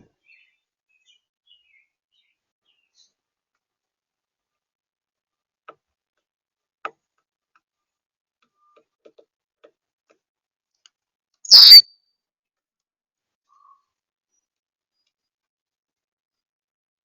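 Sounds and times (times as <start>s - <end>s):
faint ticks and taps: 5.6s - 7.7s, 8.4s - 11.0s.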